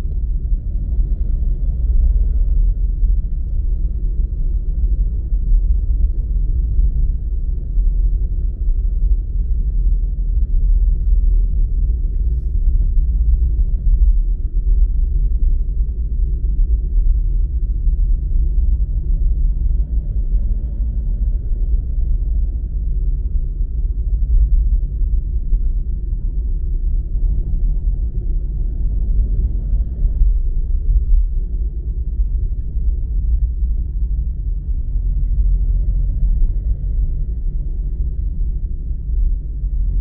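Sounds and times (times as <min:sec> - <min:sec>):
car road and engine rumble: 0:00.0 - 0:40.0.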